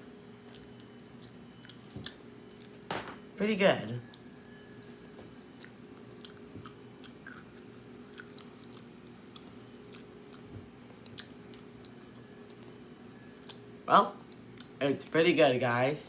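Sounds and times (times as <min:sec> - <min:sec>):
steady low hum: 0:00.0 - 0:16.0
wet chewing clicks: 0:05.6 - 0:12.7.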